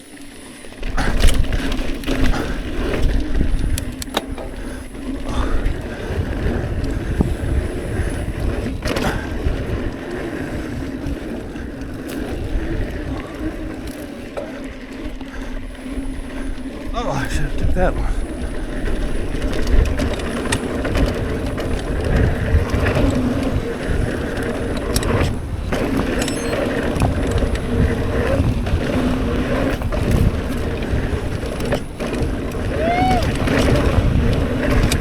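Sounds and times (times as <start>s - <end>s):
bike tyres rumbling on dirt: 0.0s - 35.0s
wind on microphone: 1.0s - 14.0s, 15.4s - 35.0s
chain and frame clacking: 19.1s - 30.7s.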